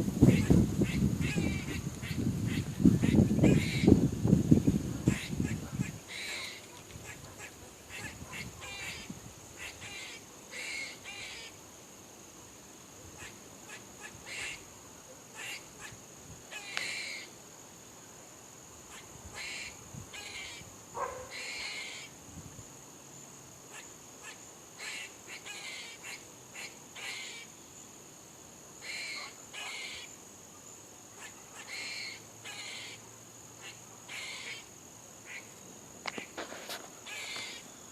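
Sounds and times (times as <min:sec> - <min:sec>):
squirrels barking: 0:00.2 - 0:04.0, 0:05.0 - 0:11.6, 0:13.0 - 0:17.3, 0:18.9 - 0:22.1, 0:23.7 - 0:27.5, 0:28.8 - 0:30.2, 0:31.1 - 0:35.5, 0:37.0 - 0:37.7.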